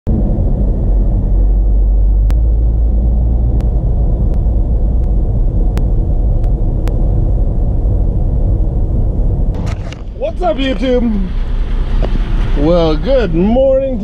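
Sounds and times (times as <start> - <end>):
vehicle engine rumble: 0.0 - 14.0.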